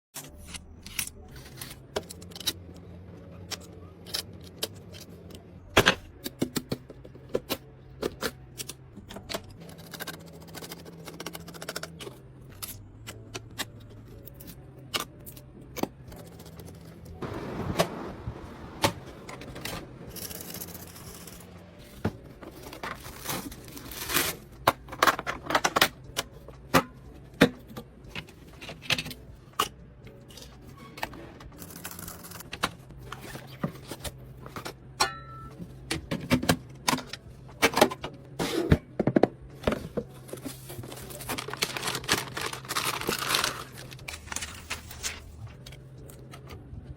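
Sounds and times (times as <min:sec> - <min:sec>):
quiet background music: 0:00.2 - 0:46.9.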